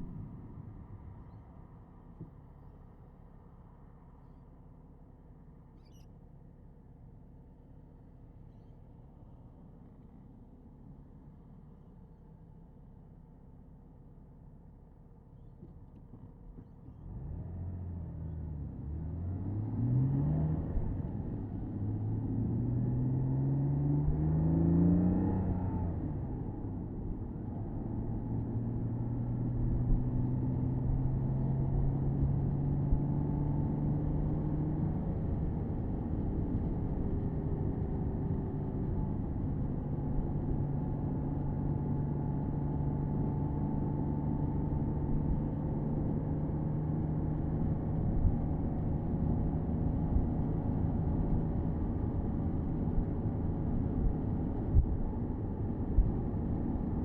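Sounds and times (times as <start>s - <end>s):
car engine accelerating: 17.0s - 57.0s.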